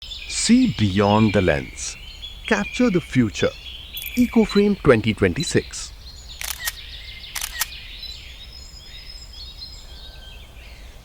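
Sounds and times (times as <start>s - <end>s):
birds chirping: 0.0s - 11.0s
camera shutter clicking: 6.4s - 7.8s.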